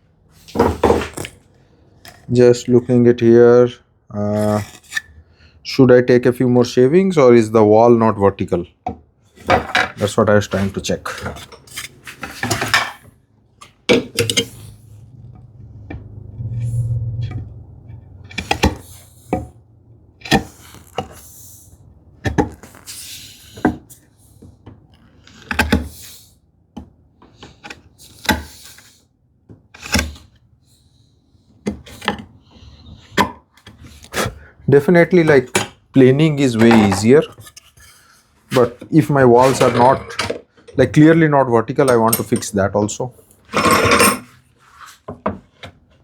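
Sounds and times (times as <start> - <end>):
low rubbing sound: 14.5 - 18.3.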